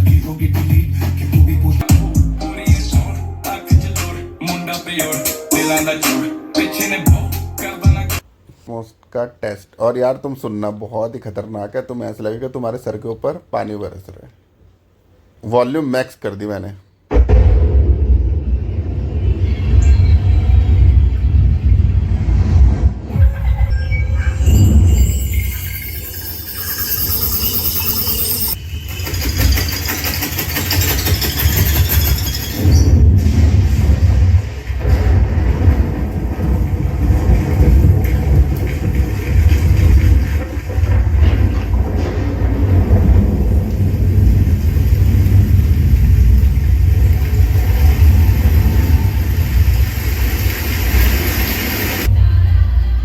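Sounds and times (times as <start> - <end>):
deep bass rumble from speakers: 0.0 - 4.0
deep bass rumble: 17.1 - 23.6, 32.8 - 50.4
dense rain-like hiss: 42.8 - 52.1.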